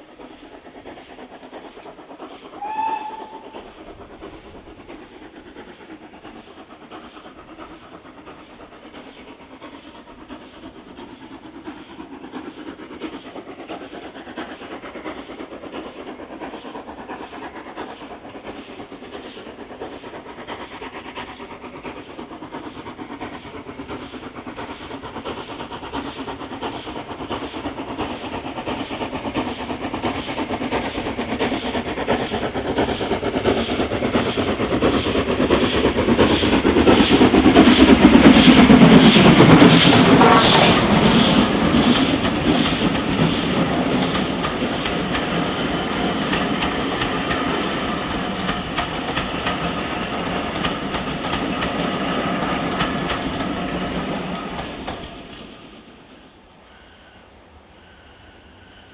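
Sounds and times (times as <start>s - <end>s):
rhythmic locomotive exhaust beats: 0.0s - 58.9s
steam locomotive whistle: 2.6s - 3.6s.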